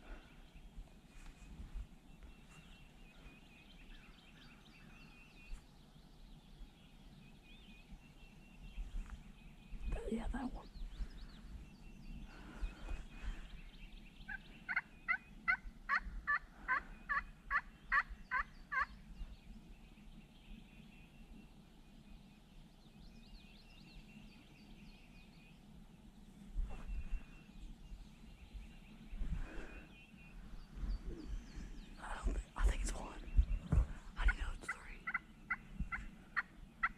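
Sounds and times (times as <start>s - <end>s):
wild turkey calling: 14.2s - 19.0s, 34.2s - 36.9s.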